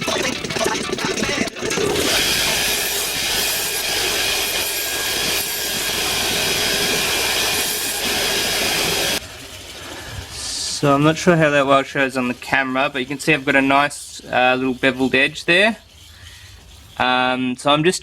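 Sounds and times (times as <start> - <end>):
belt grinder grinding knife edge: 0.2 - 9.2.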